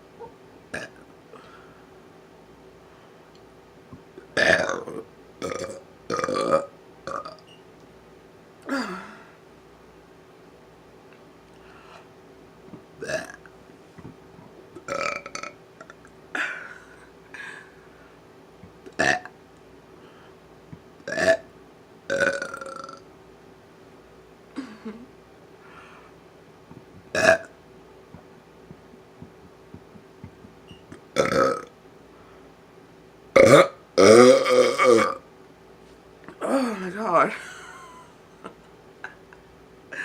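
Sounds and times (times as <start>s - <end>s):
person burping: 0.8s - 1.0s, 4.4s - 7.4s, 8.6s - 9.3s, 13.0s - 13.4s, 14.8s - 17.0s, 18.9s - 19.3s, 21.1s - 21.4s, 22.1s - 23.0s, 27.1s - 27.5s, 30.7s - 31.7s, 33.4s - 35.2s.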